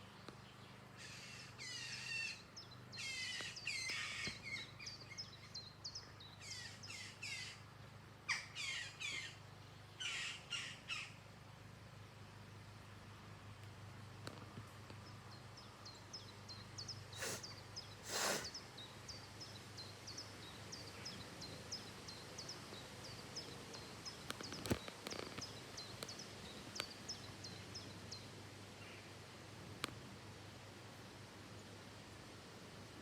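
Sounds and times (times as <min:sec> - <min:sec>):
small bird chirping: 0:14.9 - 0:29.1.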